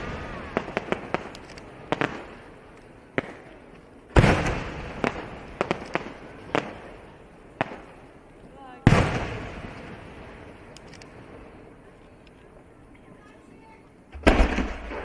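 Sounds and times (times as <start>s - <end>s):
firework sharp cracks: 0.0s - 12.6s, 14.0s - 15.0s
firework shell boom: 14.1s - 15.0s.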